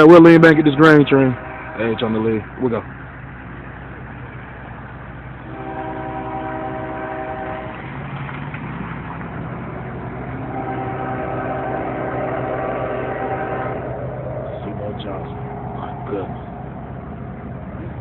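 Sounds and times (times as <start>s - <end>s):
diesel locomotive drone: 0.0s - 18.0s
locomotive air horn chords: 0.4s - 2.4s, 5.4s - 7.9s, 10.4s - 14.2s.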